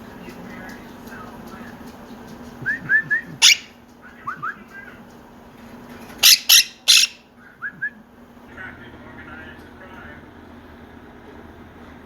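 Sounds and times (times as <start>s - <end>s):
parrot chirps: 3.4s - 3.8s, 6.2s - 7.3s
parrot harsh squawks: 3.4s - 3.8s, 6.2s - 7.2s.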